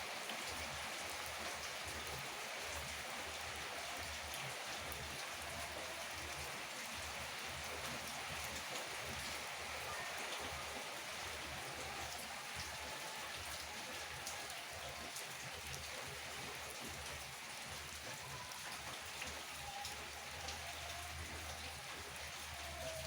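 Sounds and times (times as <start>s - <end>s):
heavy rain falling: 0.0s - 23.0s.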